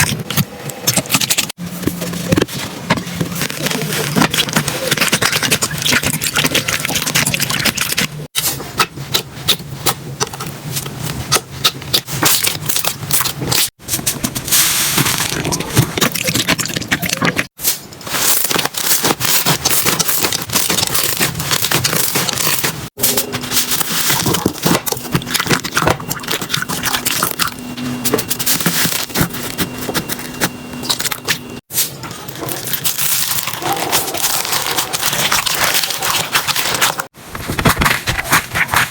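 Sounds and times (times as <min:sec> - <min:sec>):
slime crackling and popping: 0:18.1 - 0:22.8.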